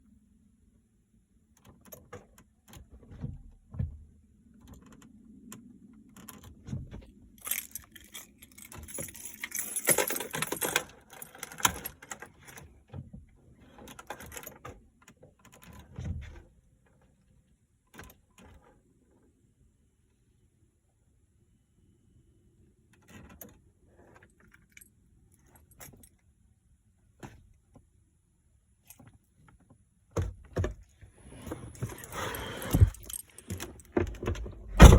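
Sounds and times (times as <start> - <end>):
car clicking and rattling: 30.2 - 34.9.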